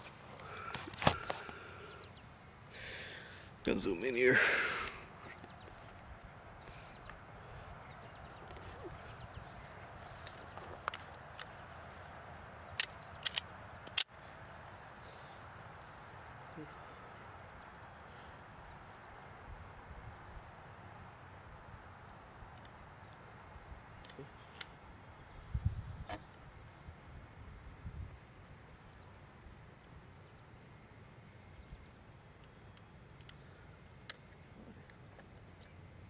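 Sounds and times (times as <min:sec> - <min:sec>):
crickets chirring: 0:00.0 - 0:36.0
sharp cracks: 0:12.7 - 0:14.1.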